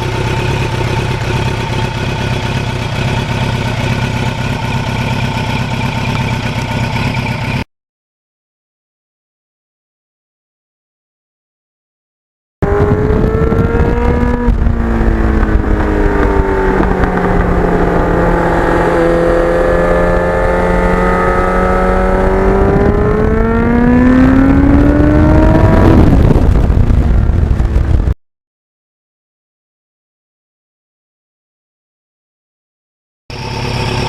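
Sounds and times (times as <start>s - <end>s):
motorcycle engine revving: 0.0s - 7.7s, 12.6s - 28.2s, 33.3s - 34.0s.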